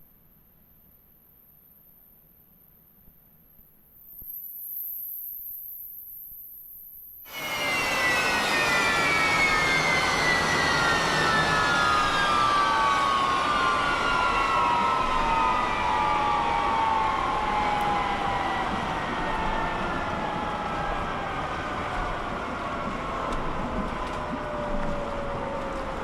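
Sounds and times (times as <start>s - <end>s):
constant rushing noise: 7.3s - 26.0s
turbine engine whine: 7.3s - 26.0s.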